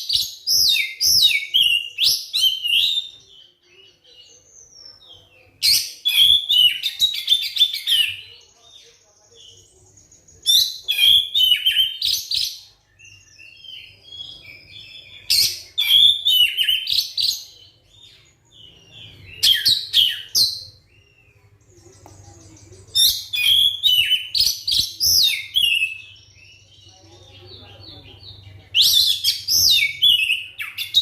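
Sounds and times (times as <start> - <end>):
soft bird twittering: 0.0 - 31.0
bird singing whistled phrases: 23.0 - 26.6.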